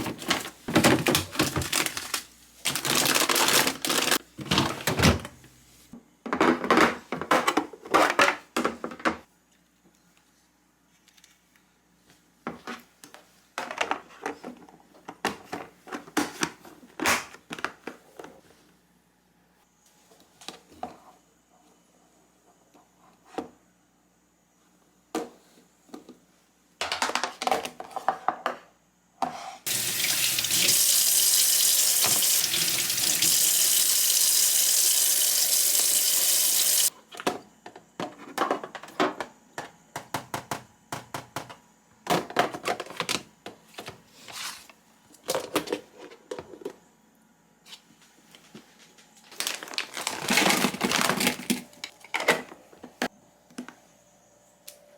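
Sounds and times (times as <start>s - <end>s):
tap running into sink: 29.7s - 36.9s.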